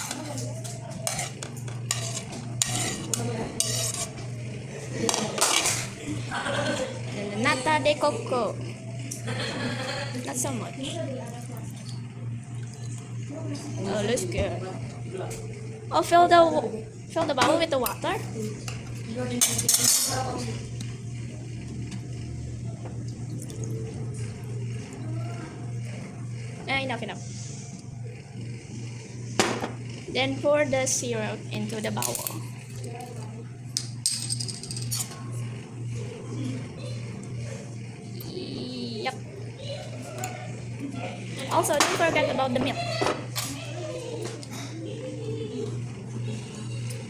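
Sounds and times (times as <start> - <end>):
spoon scraping a bowl: 0.0 - 4.4, 19.4 - 20.3
steady low hum: 0.0 - 47.0
water running into a bowl: 22.8 - 25.8.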